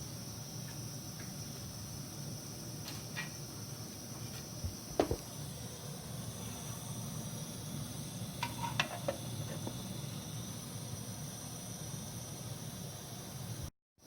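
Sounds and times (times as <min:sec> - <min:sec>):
camp stove burning hiss: 0:00.0 - 0:13.7.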